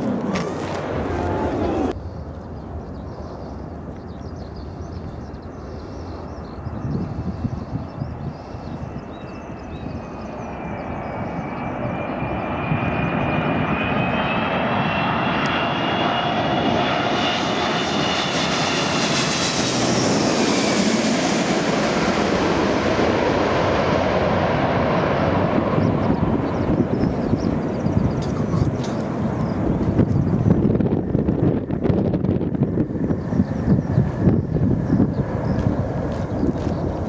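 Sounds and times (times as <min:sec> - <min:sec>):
jet airliner passing overhead: 0:00.0 - 0:37.0
high fan whine: 0:25.5 - 0:37.0.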